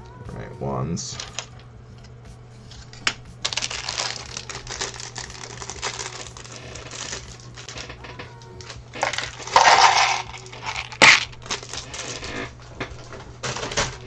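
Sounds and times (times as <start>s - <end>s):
plastic bricks clicking and clattering: 8.6s - 14.0s.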